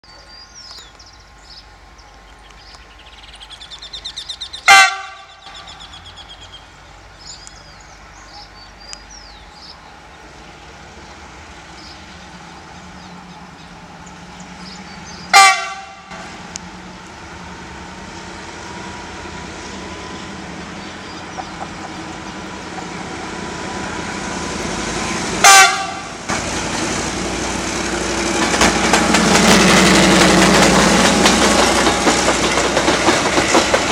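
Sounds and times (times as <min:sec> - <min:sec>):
locomotive engine rumble: 0:00.0 - 0:33.9
locomotive horn blasts: 0:04.6 - 0:05.6, 0:15.3 - 0:16.3, 0:25.4 - 0:26.3.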